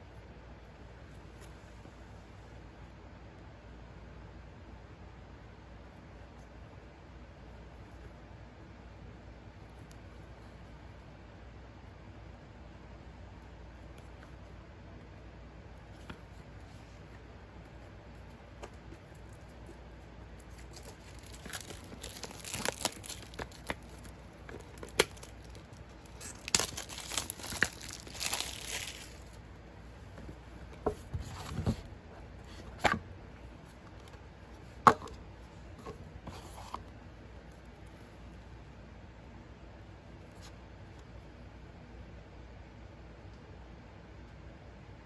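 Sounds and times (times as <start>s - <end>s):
wrapping tearing and crinkling: 20.4s - 29.5s.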